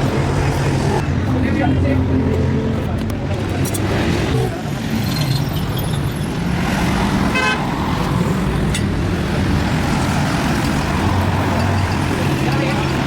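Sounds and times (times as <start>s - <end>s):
vehicle engine rumbling: 0.0s - 13.0s
car horn toot: 7.3s - 7.6s.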